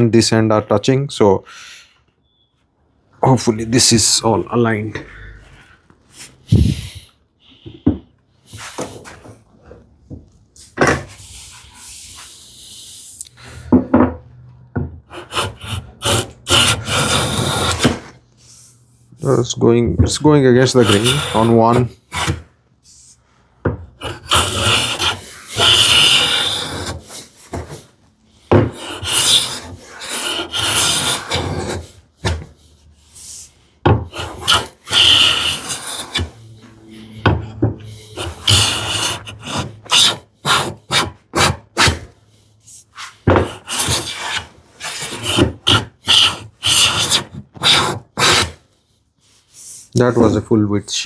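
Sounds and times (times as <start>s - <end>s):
hand plane strokes on wood: 15.1s - 18.2s, 20.2s - 22.4s, 24.0s - 27.9s, 28.5s - 42.2s, 43.0s - 48.6s.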